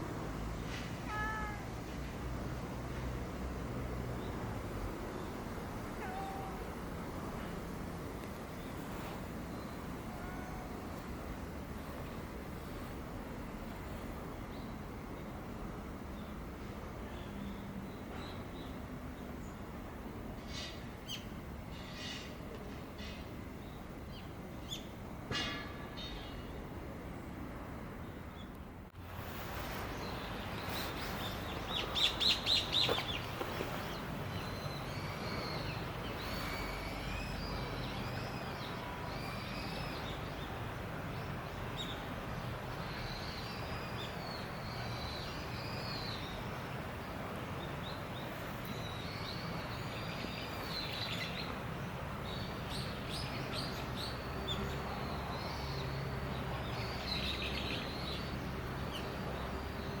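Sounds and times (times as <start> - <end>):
outdoor background hum: 0.0 - 60.0
small birds chirping: 30.0 - 40.6.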